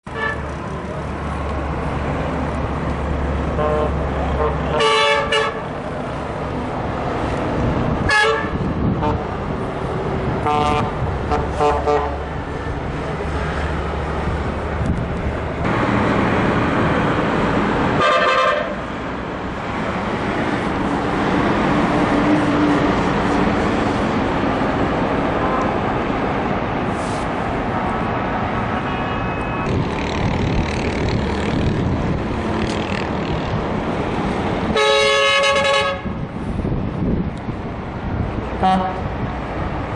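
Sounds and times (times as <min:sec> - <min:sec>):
engines and road traffic rumble: 0:00.0 - 0:39.9
bus horns tooting: 0:00.1 - 0:00.6, 0:03.5 - 0:05.7, 0:08.0 - 0:09.3, 0:10.4 - 0:12.3, 0:18.0 - 0:18.8, 0:28.7 - 0:29.8, 0:34.7 - 0:36.2, 0:38.6 - 0:39.1.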